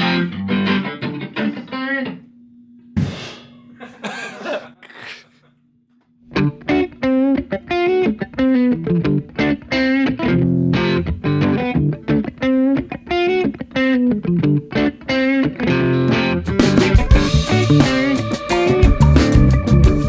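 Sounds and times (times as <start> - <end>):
electric guitar riff: 0.0 - 2.2, 6.3 - 20.0.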